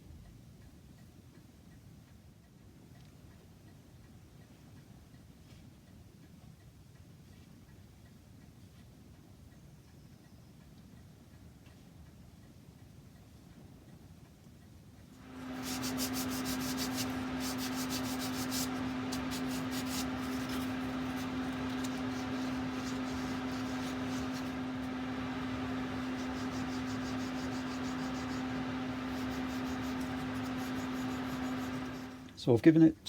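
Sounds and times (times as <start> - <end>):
steady electric hum: 15.1 - 32.7
hand sanding wood: 15.2 - 32.2.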